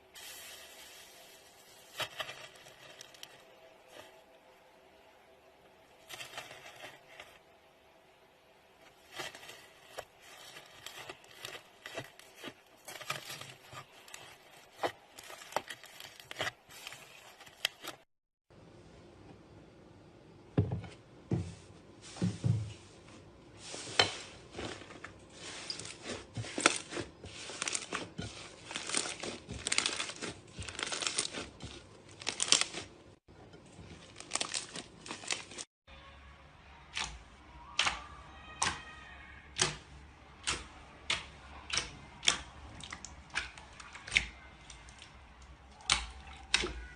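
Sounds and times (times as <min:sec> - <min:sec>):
slime crackling and popping: 0:00.2 - 0:04.1, 0:09.0 - 0:18.0, 0:25.6 - 0:32.9, 0:33.8 - 0:35.7.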